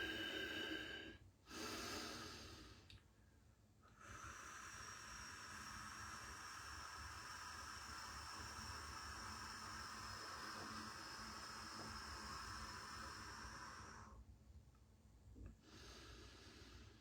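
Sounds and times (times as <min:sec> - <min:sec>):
faint breath out: 0:00.0 - 0:02.9.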